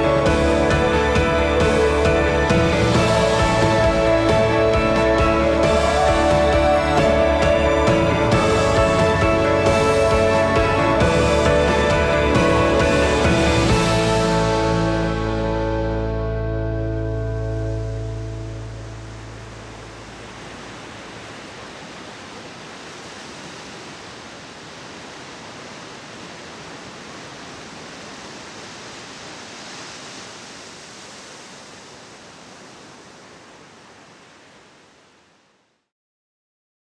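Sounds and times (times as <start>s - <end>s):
soft background music: 0.0s - 19.6s
rush of water: 0.0s - 35.7s.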